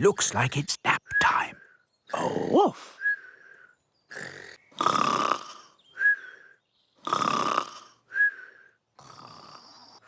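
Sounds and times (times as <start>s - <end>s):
cartoon snoring: 4.1s - 5.8s, 7.0s - 8.0s, 9.0s - 10.0s.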